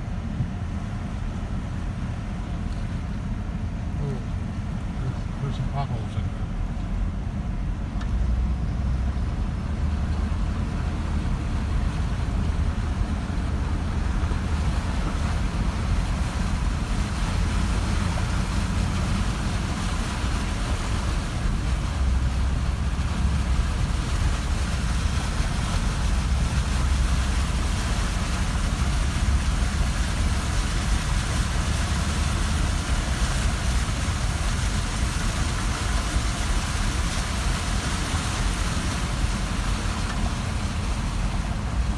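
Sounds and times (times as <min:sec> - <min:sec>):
car engine and road rumble: 0:00.0 - 0:41.9
water hissing under tyres: 0:08.4 - 0:41.9.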